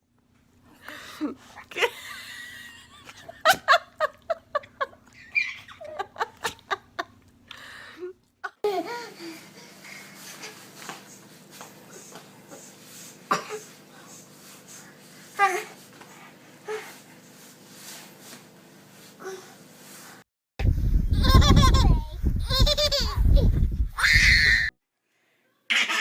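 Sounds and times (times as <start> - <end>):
baby laughing: 2.8 - 7.0, 21.2 - 23.4, 25.7 - 26.0.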